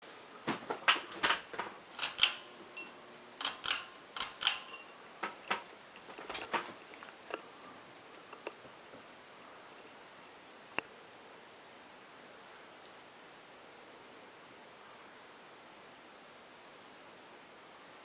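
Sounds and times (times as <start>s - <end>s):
fan pull chain clicking: 0.9s - 6.6s.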